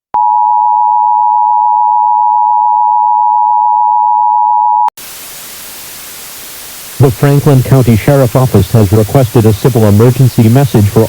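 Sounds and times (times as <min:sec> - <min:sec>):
static hiss: 0:05.0 - 0:11.0.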